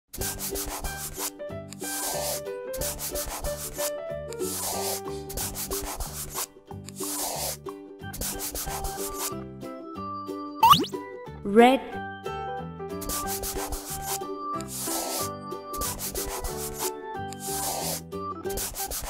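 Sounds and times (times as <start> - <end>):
scratchy rubbing noise: 1.9 - 3.8, 4.5 - 7.6, 13.1 - 18.0, 18.6 - 19.0
children's instrumental music: 10.6 - 18.1.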